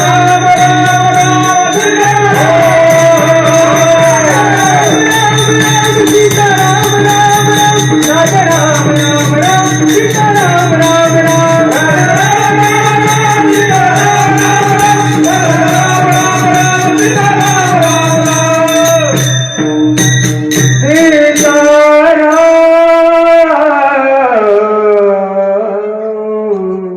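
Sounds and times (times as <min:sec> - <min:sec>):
steady drone: 0:00.0 - 0:18.8
man singing: 0:00.0 - 0:19.4, 0:20.8 - 0:26.9
jingling percussion beat: 0:00.0 - 0:23.6.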